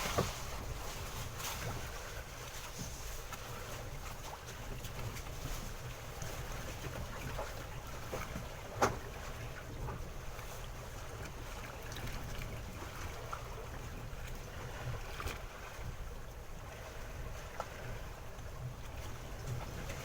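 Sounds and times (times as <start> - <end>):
water wash: 0.0 - 4.1
boat engine low rumble: 0.0 - 20.0
wind: 0.0 - 20.0.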